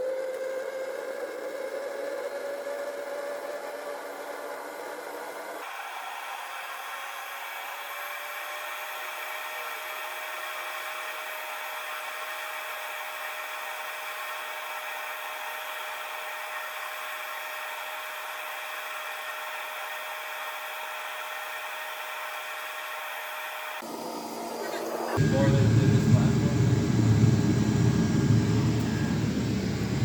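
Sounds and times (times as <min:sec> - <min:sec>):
air heater fan whirring: 0:23.8 - 0:30.0
high hum: 0:23.9 - 0:30.0.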